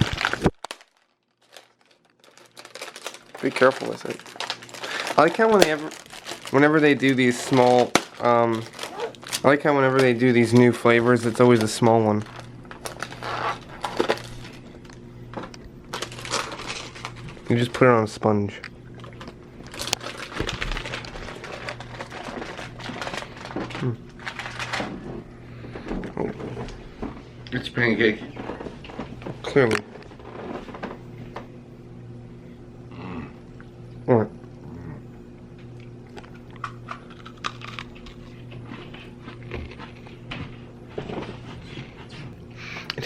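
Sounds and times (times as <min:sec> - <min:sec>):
cookie crunching: 0:00.0 - 0:17.8, 0:18.9 - 0:24.9, 0:35.8 - 0:40.4
plastic packaging crinkling: 0:00.0 - 0:17.9, 0:19.0 - 0:25.0, 0:36.2 - 0:38.4
steady low hum: 0:01.5 - 0:43.0.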